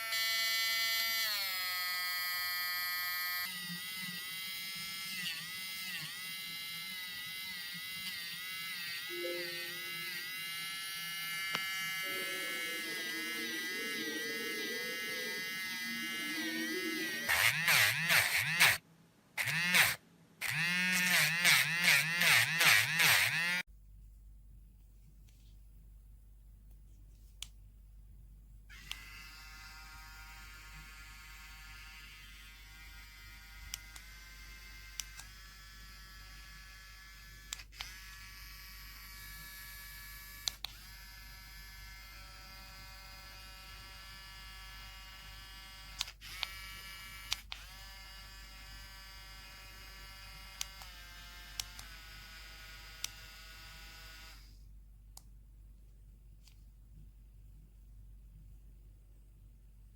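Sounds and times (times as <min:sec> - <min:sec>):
electric nail drill whining: 0:12.8 - 0:18.8, 0:19.4 - 0:23.6, 0:28.7 - 0:54.5.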